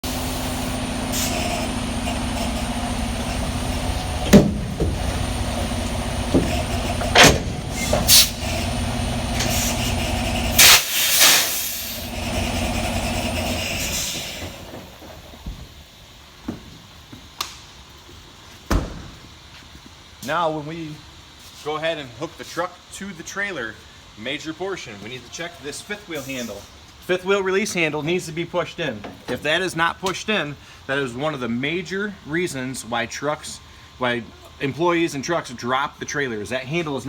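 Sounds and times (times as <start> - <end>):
truck diesel engine idling: 0.0 - 10.7, 11.5 - 15.2
air brake hiss: 0.3 - 1.7, 7.7 - 8.7, 9.3 - 14.6, 26.2 - 26.8
trailer coupling clunks: 2.1 - 10.8.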